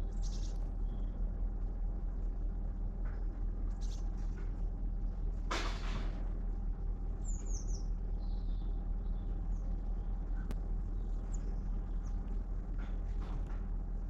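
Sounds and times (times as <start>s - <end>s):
small birds chirping: 0.0s - 1.8s, 3.6s - 4.7s, 7.0s - 13.8s
steady low rumble: 0.0s - 14.0s.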